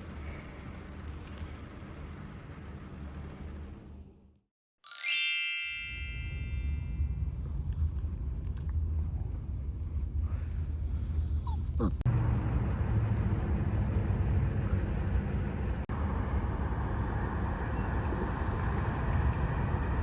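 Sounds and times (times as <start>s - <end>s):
bright chime: 4.8s - 6.8s.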